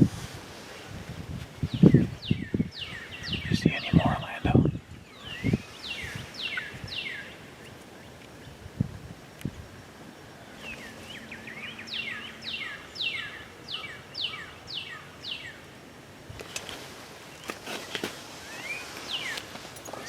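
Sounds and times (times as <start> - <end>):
songbird whistling: 5.2 - 7.3, 18.4 - 19.4.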